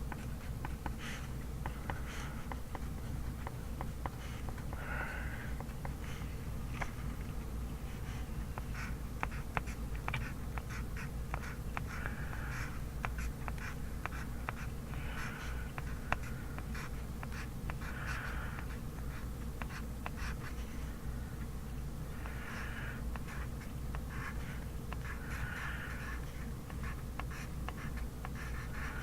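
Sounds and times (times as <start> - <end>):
steady low hum: 0.0 - 29.0
pencil scratching on paper: 8.0 - 21.0, 22.2 - 29.0.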